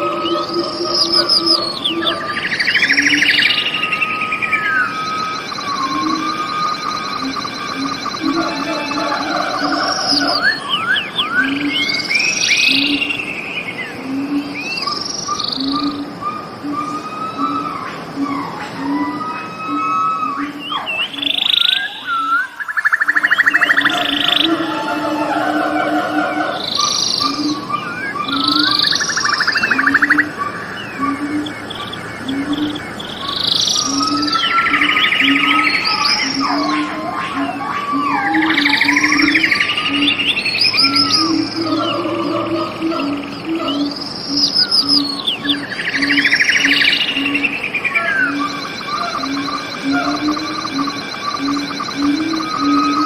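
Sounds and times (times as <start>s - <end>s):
sliding whistled notes: 0.0s - 13.0s, 14.6s - 31.2s
birds calling and singing: 0.0s - 53.0s
buzzy bird trills: 0.0s - 53.0s.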